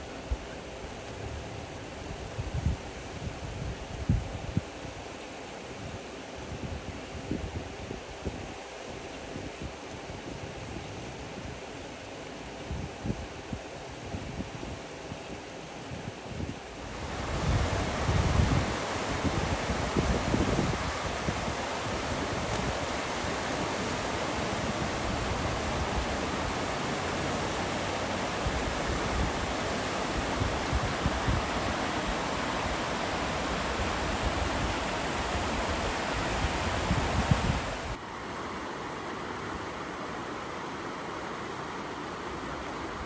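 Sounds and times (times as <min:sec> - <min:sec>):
wind buffeting microphone: 0:16.4 - 0:38.0
river water rushing: 0:16.8 - 0:42.4.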